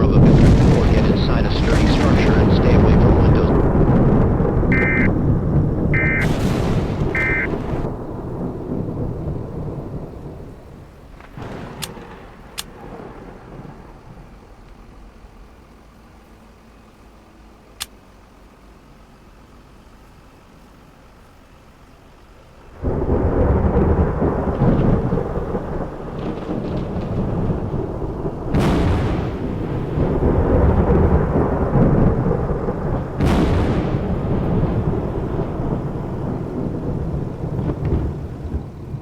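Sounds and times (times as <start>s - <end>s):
thunder cracks: 0.0s - 15.7s, 22.7s - 39.0s
heavy rain: 0.0s - 39.0s.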